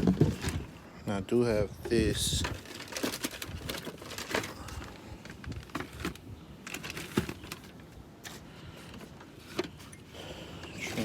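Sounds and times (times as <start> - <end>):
packaging rustling: 2.2 - 10.0.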